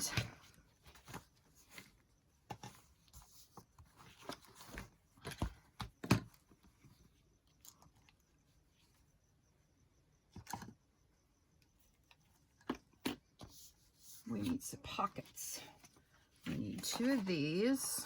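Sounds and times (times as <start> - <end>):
paper rustling: 15.9 - 18.0.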